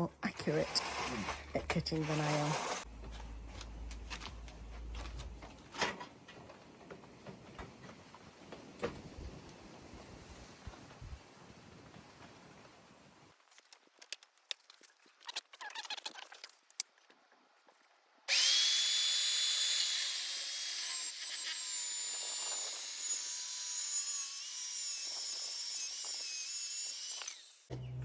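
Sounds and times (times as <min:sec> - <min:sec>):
electric power saw running: 0:18.3 - 0:25.0, 0:25.6 - 0:27.7.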